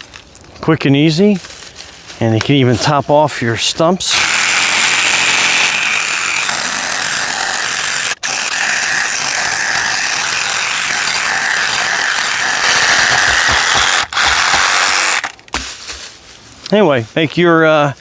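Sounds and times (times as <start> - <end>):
reciprocating saw cutting wood: 4.1 - 15.4.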